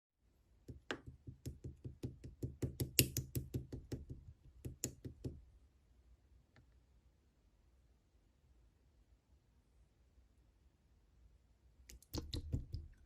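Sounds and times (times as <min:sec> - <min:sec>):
rapid light taps: 0:00.8 - 0:05.4.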